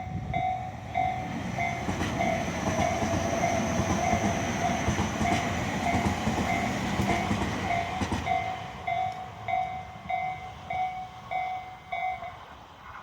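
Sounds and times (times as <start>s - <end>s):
level-crossing alarm dinging: 0.0s - 12.4s
train wheels clattering: 1.0s - 11.5s.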